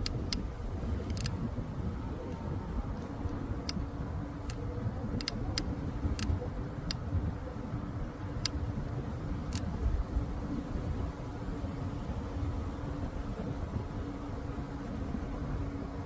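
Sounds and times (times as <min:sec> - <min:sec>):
sharp clicks: 0:00.0 - 0:01.5, 0:04.4 - 0:07.0, 0:08.4 - 0:08.7, 0:09.4 - 0:09.7
vehicle engine running: 0:00.0 - 0:16.0.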